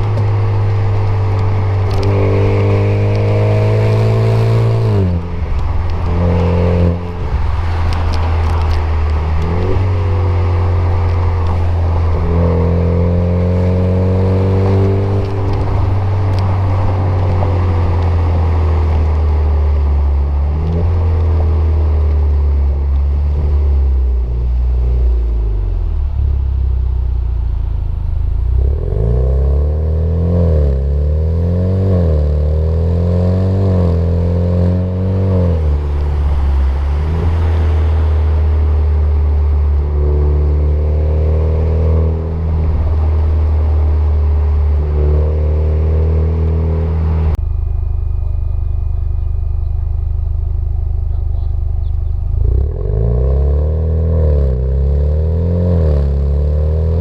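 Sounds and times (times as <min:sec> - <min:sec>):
car exhaust drone: 0:00.0 - 0:57.0.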